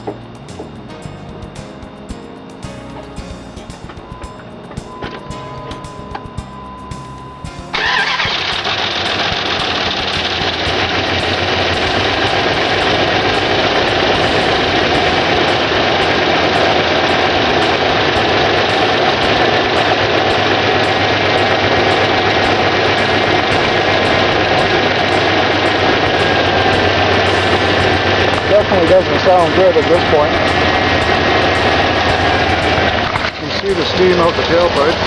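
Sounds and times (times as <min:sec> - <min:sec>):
car engine idling roughly: 0:07.7 - 0:35.0.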